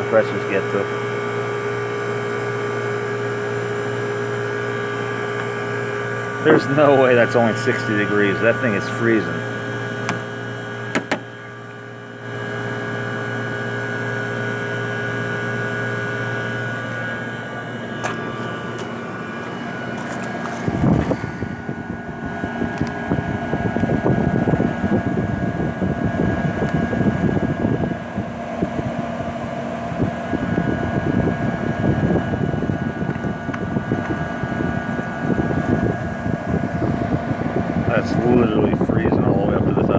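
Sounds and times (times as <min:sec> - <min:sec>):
air conditioner humming: 0:00.0 - 0:39.9
knock: 0:10.9 - 0:11.2
air blowing on microphone: 0:30.0 - 0:39.9.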